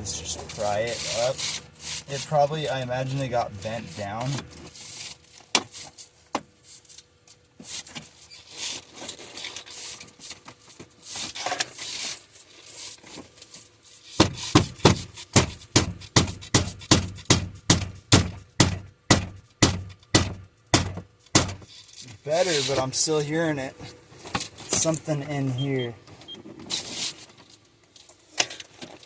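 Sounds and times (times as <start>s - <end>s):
sharp knocks on dash panel: 14.2s - 21.6s.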